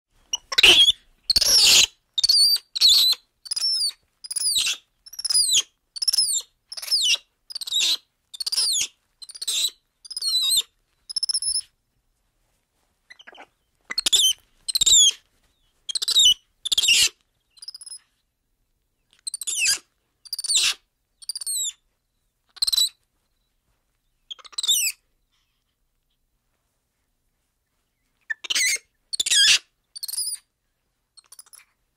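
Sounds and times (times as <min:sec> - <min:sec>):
monkey squeaky calls: 0:00.3 - 0:11.7, 0:13.1 - 0:15.2, 0:15.9 - 0:18.0, 0:19.2 - 0:21.8, 0:22.6 - 0:23.0, 0:24.3 - 0:25.0, 0:28.3 - 0:30.4, 0:31.2 - 0:31.7.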